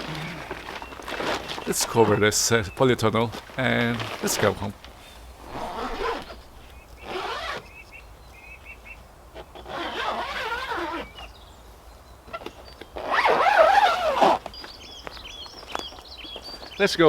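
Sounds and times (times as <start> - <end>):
plastic sheeting rustling: 0.0 - 7.6
bird chirping: 0.0 - 9.8, 10.8 - 13.2, 14.4 - 17.0.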